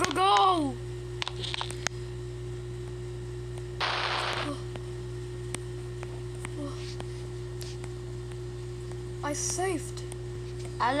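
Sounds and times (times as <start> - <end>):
low hum: 0.6 - 9.2.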